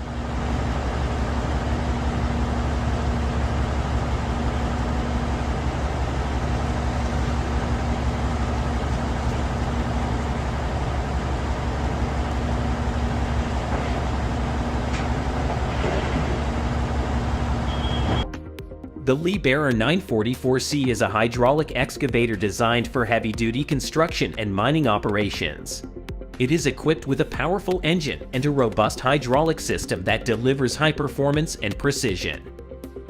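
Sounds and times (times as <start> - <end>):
excavator engine running: 0.0 - 18.3.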